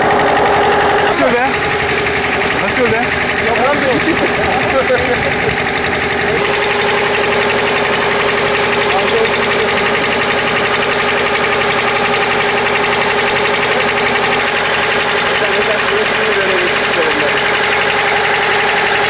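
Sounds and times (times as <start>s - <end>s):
engine humming: 0.0s - 19.0s
faint voices: 1.0s - 6.6s.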